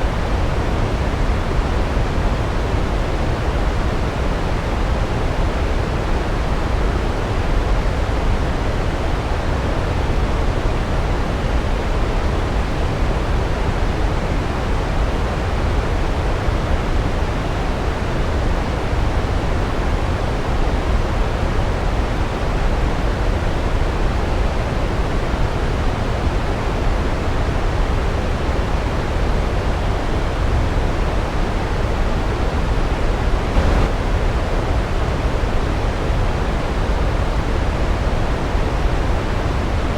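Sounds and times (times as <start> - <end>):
waterfall rumbling: 32.4 - 35.6.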